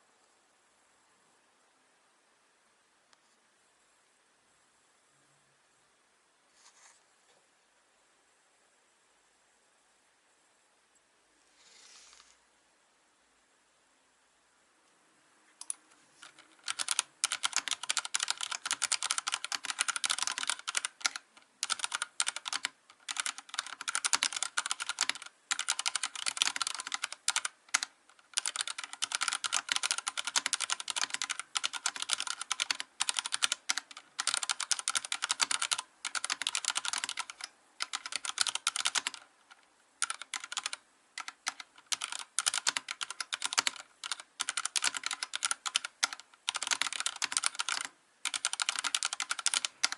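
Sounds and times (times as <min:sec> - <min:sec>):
mechanical keyboard typing: 0:15.6 - 0:49.9.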